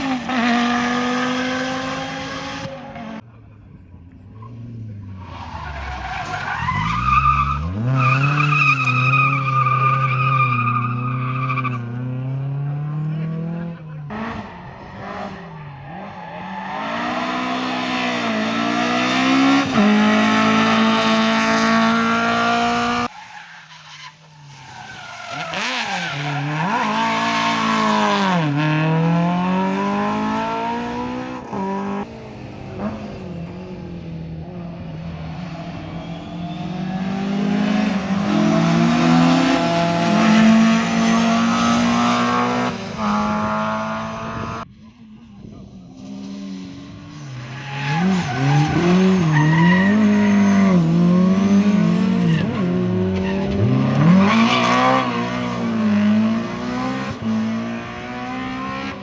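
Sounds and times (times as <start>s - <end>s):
rally car engines revving: 0.0s - 59.0s
tyres squealing and skidding: 4.3s - 12.3s, 14.1s - 28.6s, 35.4s - 42.4s, 46.2s - 55.7s.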